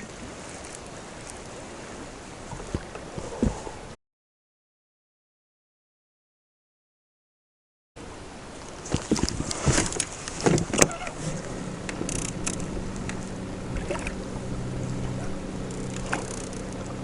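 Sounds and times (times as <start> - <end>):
knocks and clatter in boat: 2.5 - 3.8, 8.9 - 17.0
electric motor humming: 11.4 - 17.0.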